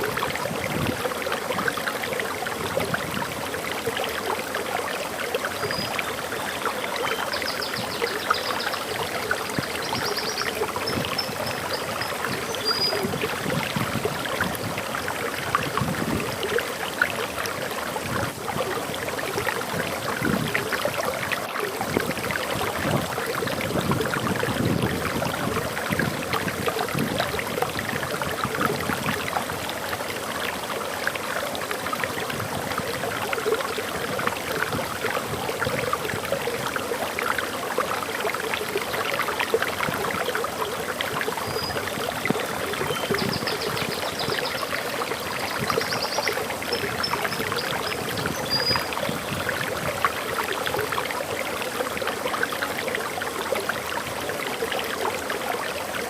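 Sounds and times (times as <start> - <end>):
waterfall rushing and splashing: 0.0 - 56.0.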